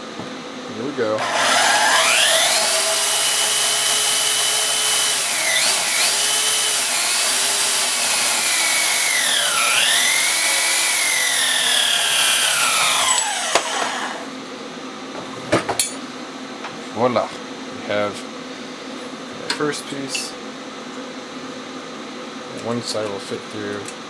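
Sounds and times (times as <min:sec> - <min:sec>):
bandsaw screeching through metal: 0:01.2 - 0:14.3.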